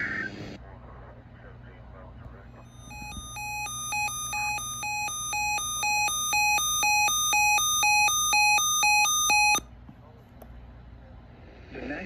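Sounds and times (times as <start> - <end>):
electronic two-tone alert alarm: 2.6 - 9.6.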